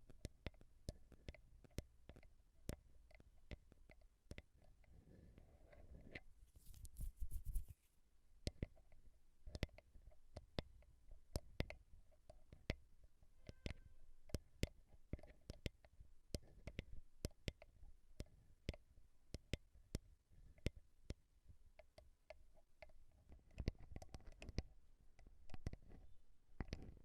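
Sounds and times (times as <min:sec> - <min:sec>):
tapping on a microphone: 0:06.1 - 0:07.8, 0:23.6 - 0:27.0.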